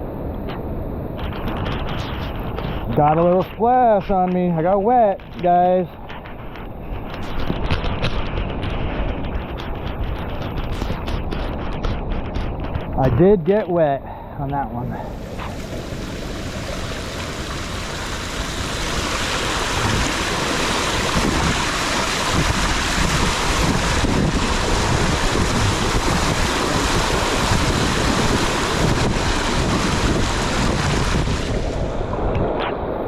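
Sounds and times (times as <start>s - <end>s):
wind buffeting microphone: 0.0s - 33.0s
floodwater rushing: 14.8s - 32.6s.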